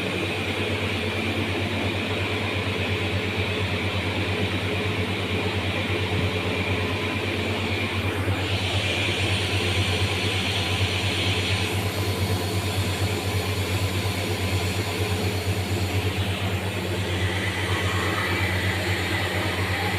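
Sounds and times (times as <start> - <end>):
grinding machine humming: 0.0 - 19.9.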